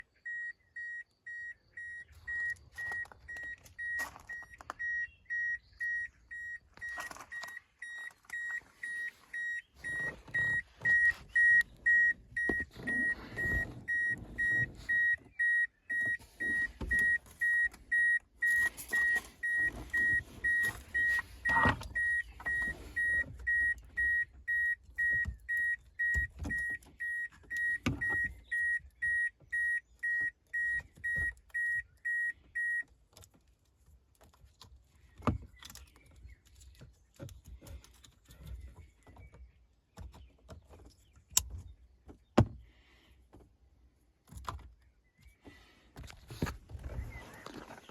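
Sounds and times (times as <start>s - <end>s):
car warning beeper: 0.0s - 32.9s.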